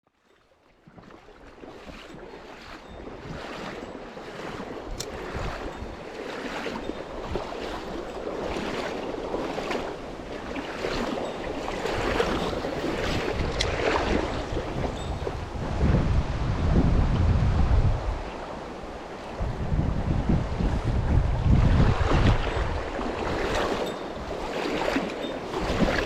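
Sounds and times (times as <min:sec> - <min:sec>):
wind on microphone: 0:01.0 - 0:26.0
mountain stream rushing: 0:21.1 - 0:26.0.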